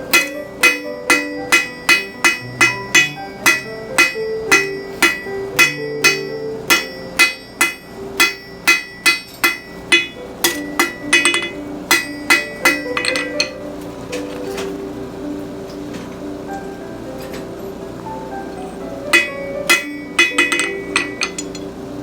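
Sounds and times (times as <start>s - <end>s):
hammer striking steel on anvil: 0.0s - 13.6s, 19.1s - 21.7s.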